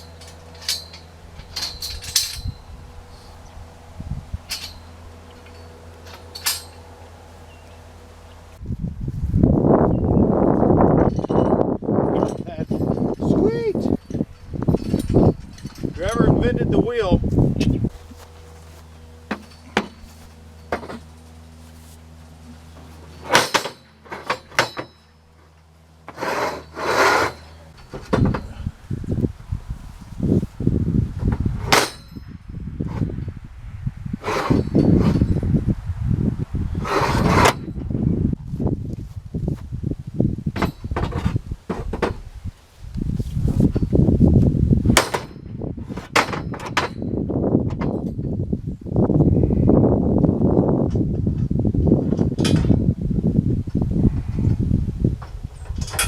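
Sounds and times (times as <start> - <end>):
metallic clinks and clatters: 0.0 - 3.3, 4.4 - 7.0, 11.0 - 16.3, 18.2 - 21.4
scraping sounds: 0.0 - 7.0, 11.0 - 25.0, 26.0 - 30.7, 34.2 - 35.5, 36.7 - 39.7, 42.6 - 44.0
loud rough noise: 0.0 - 38.6
steady low hum: 0.0 - 56.0.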